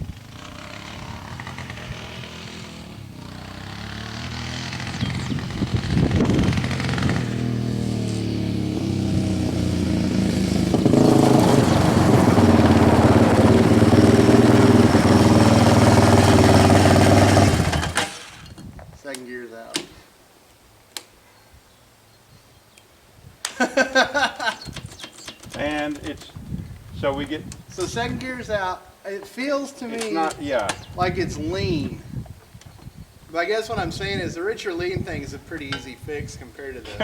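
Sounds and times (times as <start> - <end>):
quad bike engine running: 0.0 - 18.4.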